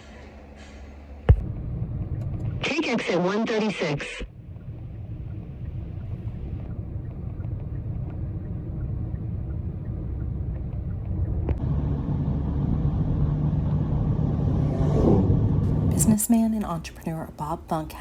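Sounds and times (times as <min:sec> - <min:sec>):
car engine and road rumble: 0:00.0 - 0:17.9.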